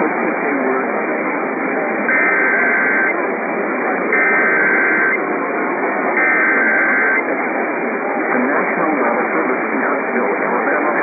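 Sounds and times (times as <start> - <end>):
two-tone digital warble bursts: 2.1 - 3.1, 4.2 - 5.2, 6.2 - 7.2
radio static: 2.1 - 3.3, 4.2 - 5.2, 8.2 - 11.0.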